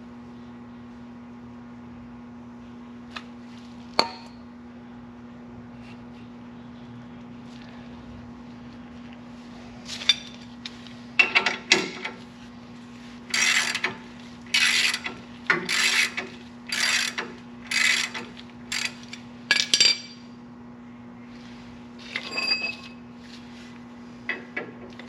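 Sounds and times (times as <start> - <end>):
metal tool scraping brake pin: 13.3 - 13.9.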